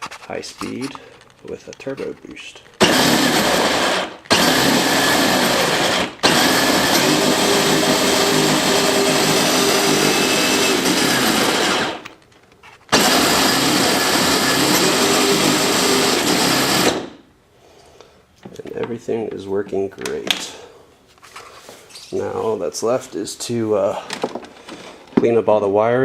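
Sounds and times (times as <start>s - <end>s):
electric motor whine: 2.8s - 12.1s, 12.9s - 17.2s.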